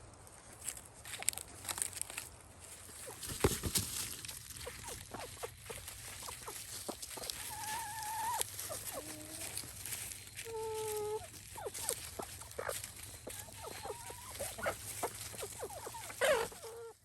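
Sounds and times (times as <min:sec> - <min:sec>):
chickens clucking: 0:04.4 - 0:17.0.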